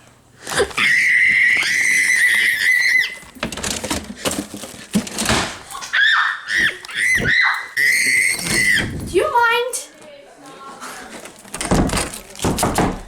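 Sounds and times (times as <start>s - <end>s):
knocks: 11.5s - 13.0s.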